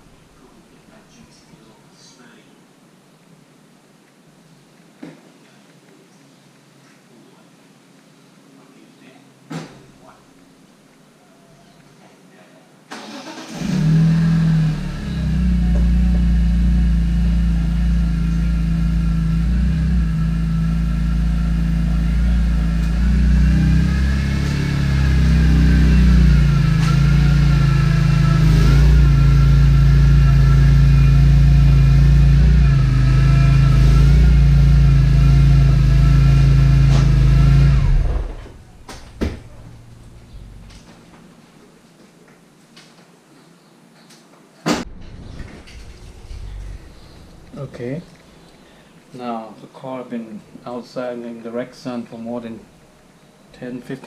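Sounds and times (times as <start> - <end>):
car engine running: 14.0 - 41.0.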